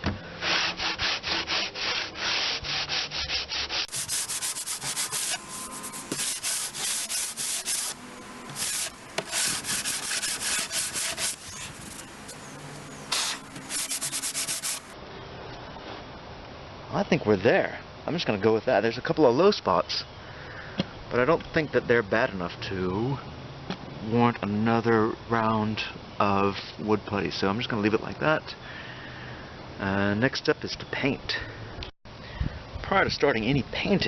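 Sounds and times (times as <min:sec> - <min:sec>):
hand sander rasping on wood: 0:00.4 - 0:12.0, 0:13.1 - 0:15.0.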